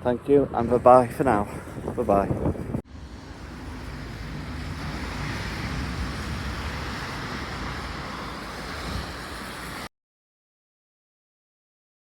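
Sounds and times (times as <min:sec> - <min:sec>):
tyres hissing on wet road: 0:02.9 - 0:09.9.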